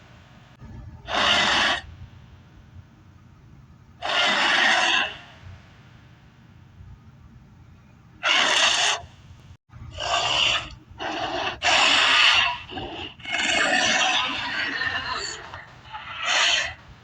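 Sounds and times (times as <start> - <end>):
creature raspy roars and growls: 9.9 - 16.8.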